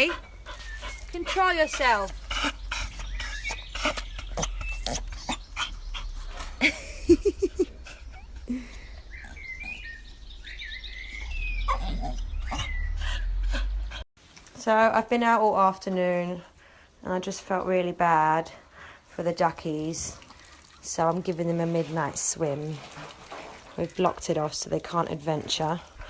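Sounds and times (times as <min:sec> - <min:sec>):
dog whimpering: 0:07.9 - 0:09.9, 0:11.1 - 0:14.0
dog whining: 0:11.0 - 0:13.8.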